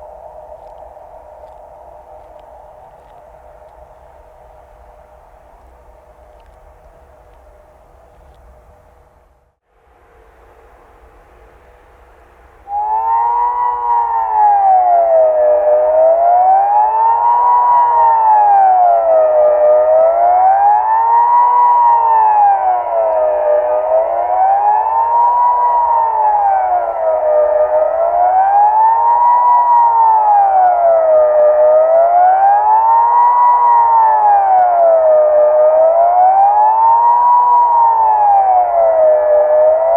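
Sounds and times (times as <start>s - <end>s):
warning siren wailing: 11.5s - 39.9s.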